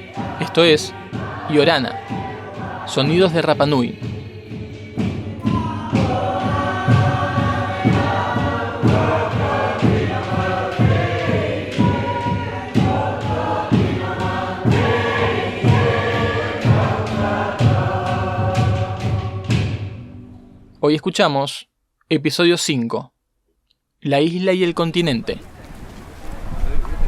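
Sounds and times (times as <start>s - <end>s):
steady drum beat: 0.0s - 20.0s
choir chanting: 0.0s - 20.2s.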